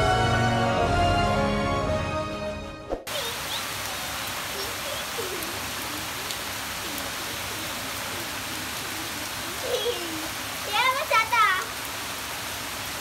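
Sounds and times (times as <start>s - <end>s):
steady rain hiss: 3.1s - 13.0s.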